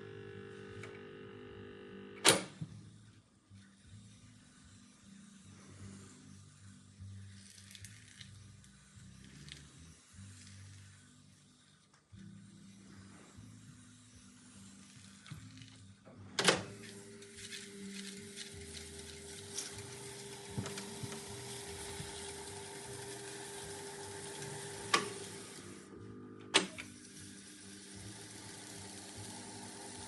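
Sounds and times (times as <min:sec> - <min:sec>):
tape recorder low hum: 0:00.0 - 0:11.1, 0:11.9 - 0:30.0.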